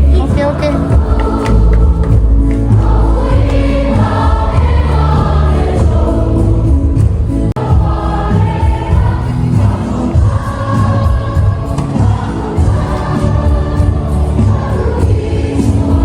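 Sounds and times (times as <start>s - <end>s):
sustained bass: 0.0s - 15.1s
gospel choir singing: 0.0s - 16.0s.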